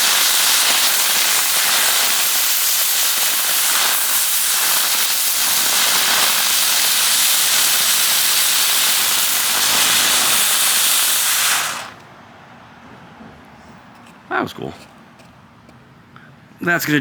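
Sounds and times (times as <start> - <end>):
fireworks spraying sparks hissing: 0.0 - 12.1.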